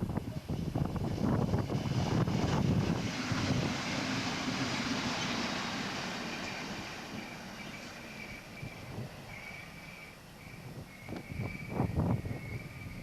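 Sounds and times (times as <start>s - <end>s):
railbus wheel and engine rumble: 0.0s - 13.0s
thin high squeal: 6.3s - 13.0s.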